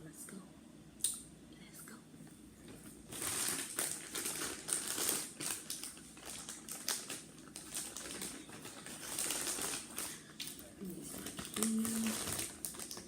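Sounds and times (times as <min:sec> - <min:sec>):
package crinkling and crackling: 0:02.6 - 0:13.0.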